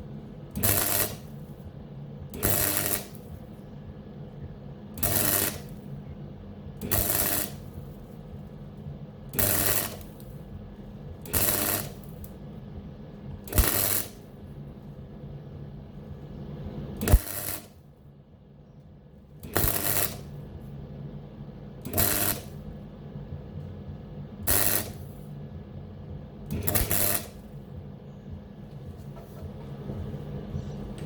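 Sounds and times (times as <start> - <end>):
welder low hum: 0.0 - 31.0
welding arc crackling: 0.5 - 1.8, 2.4 - 3.6, 5.0 - 6.0, 6.8 - 8.2, 9.4 - 10.5, 11.2 - 12.4, 13.4 - 14.4, 16.8 - 17.9, 19.4 - 20.6, 21.8 - 22.7, 24.4 - 25.4, 26.5 - 27.7.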